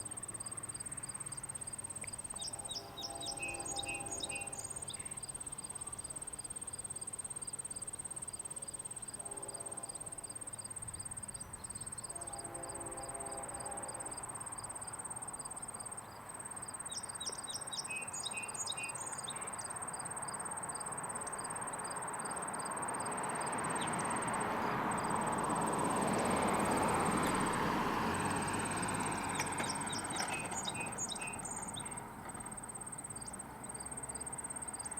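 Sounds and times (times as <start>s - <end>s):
train rumble: 0.0s - 6.7s, 21.0s - 34.8s
insects chirping: 0.0s - 34.9s
distant train horn: 2.2s - 5.2s, 9.0s - 10.6s, 11.8s - 15.0s, 23.5s - 32.2s
birds calling: 2.3s - 5.2s.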